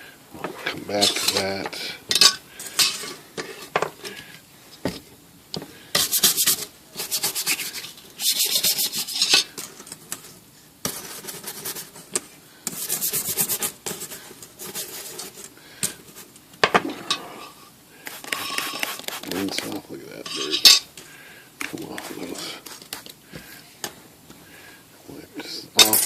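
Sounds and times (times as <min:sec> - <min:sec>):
bristle brush scrubbing: 0:06.0 - 0:09.4, 0:12.7 - 0:16.3, 0:18.0 - 0:20.6, 0:21.6 - 0:23.6.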